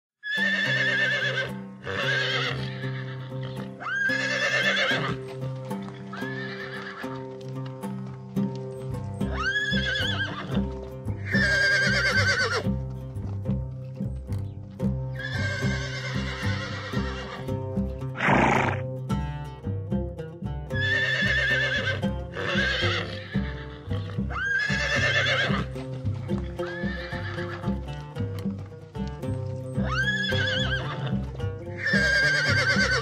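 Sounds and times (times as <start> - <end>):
horses whinnying: 0.2 - 7.4, 9.2 - 12.8, 15.1 - 17.5, 18.1 - 18.9, 20.8 - 27.9, 29.8 - 33.0
background music: 0.2 - 33.0
hooves clip-clopping: 0.3 - 33.0.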